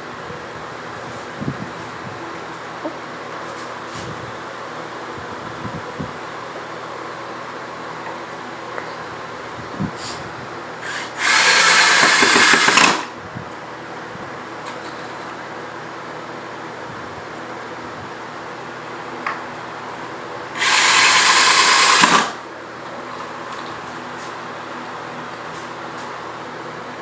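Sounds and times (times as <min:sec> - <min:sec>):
power drill drilling into wood: 0:10.8 - 0:13.1, 0:20.6 - 0:22.4.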